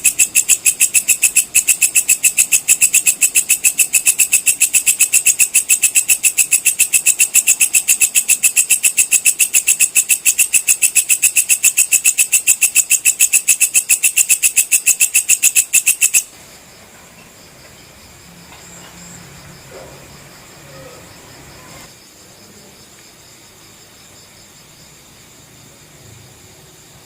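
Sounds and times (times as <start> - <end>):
insect shrill clicking chirps: 0.0 - 16.3.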